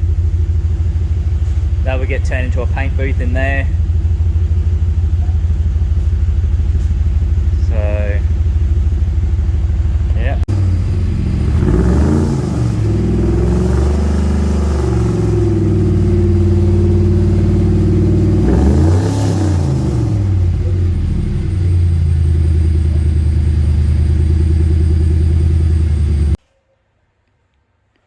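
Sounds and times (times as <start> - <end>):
car engine idling and revving: 0.0 - 26.4.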